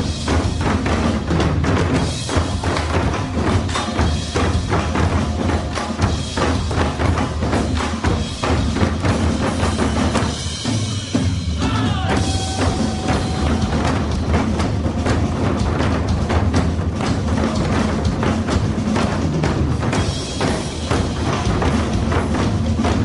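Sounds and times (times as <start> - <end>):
rapid drum strikes: 0.0 - 23.0.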